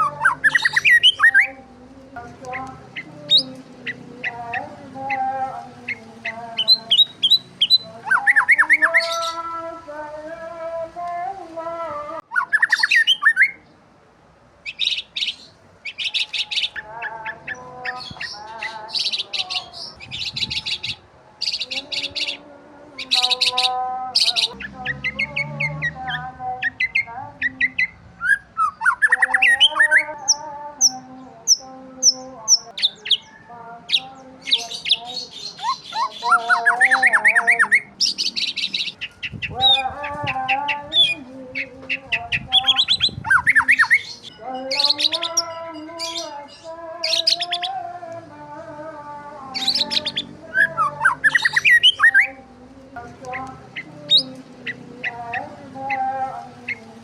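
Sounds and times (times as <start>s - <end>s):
harsh bird squawks: 0.0s - 1.5s, 12.3s - 13.6s, 23.0s - 30.1s, 34.9s - 44.3s, 49.6s - 52.3s
songbirds chirping and trilling: 0.0s - 57.0s.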